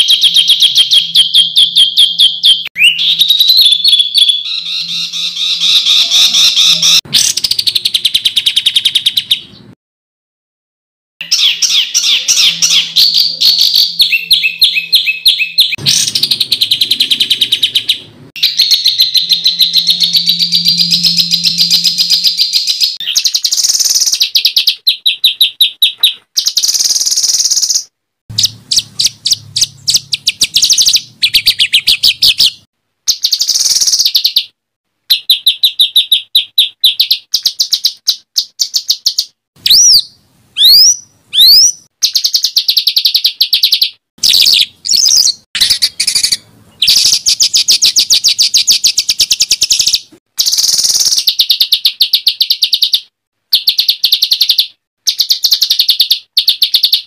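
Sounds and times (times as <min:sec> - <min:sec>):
harsh bird trills: 0:00.0 - 0:09.7, 0:11.2 - 0:34.5, 0:35.1 - 0:57.0
upward-sweeping whistles: 0:11.2 - 0:24.5.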